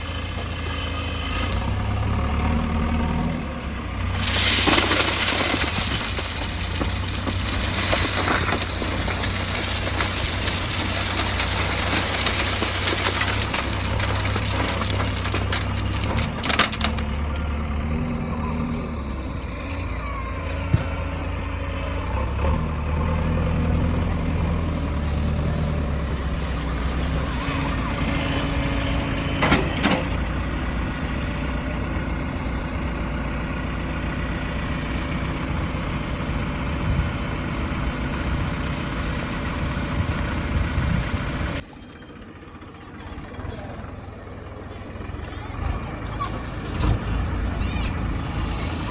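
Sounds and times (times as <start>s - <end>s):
diesel engine working: 0.0s - 48.9s.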